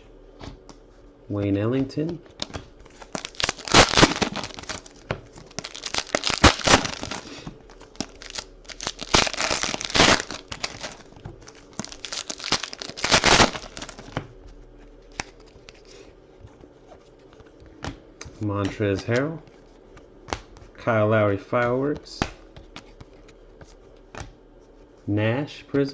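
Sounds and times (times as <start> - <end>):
wrappers crinkling and tearing: 2.8 - 14.2.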